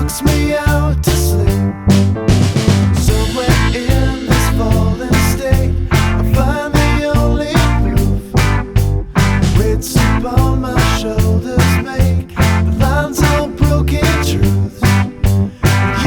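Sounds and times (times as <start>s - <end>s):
rock song with guitar and singing: 0.0s - 16.0s.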